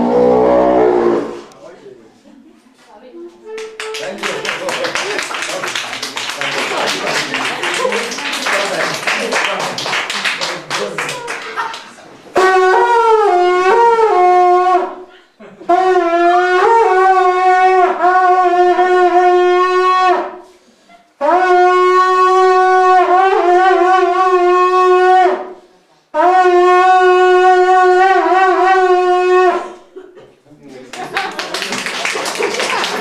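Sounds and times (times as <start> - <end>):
long horn blasts: 0.0 - 1.6, 12.4 - 15.1, 15.7 - 20.4, 21.2 - 25.5, 26.2 - 29.7
breaths: 15.1 - 15.4, 20.4 - 21.2, 25.6 - 26.1.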